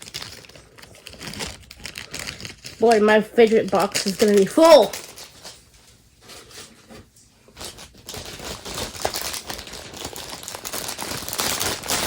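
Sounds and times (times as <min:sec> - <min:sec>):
plastic packaging crinkling: 0:00.0 - 0:12.0
small toys clicking: 0:01.8 - 0:05.2.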